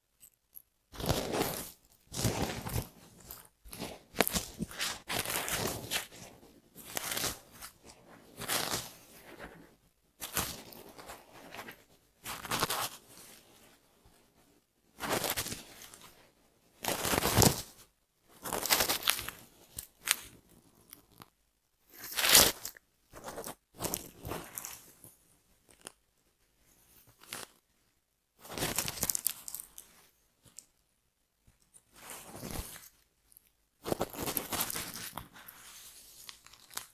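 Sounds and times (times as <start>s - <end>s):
scratching through hair: 1.0s - 13.0s.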